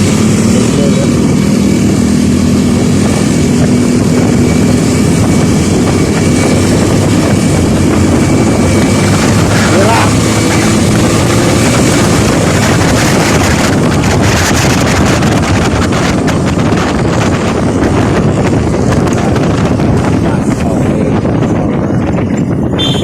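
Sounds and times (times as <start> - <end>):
road and engine noise: 0.0 - 23.0
wind rushing over microphone: 0.0 - 23.0.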